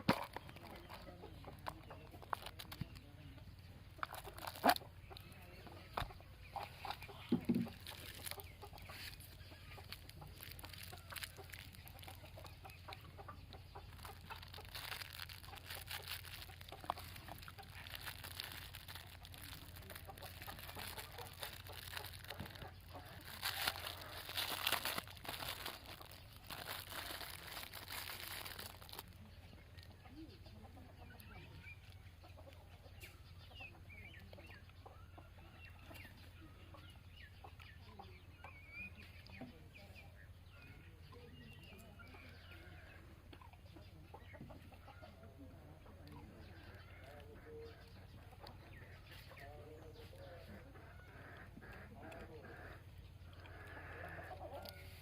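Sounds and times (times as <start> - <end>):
crackling and rustling: 0.0 - 3.4, 4.0 - 5.2, 5.9 - 29.9
chickens clucking: 0.0 - 55.0.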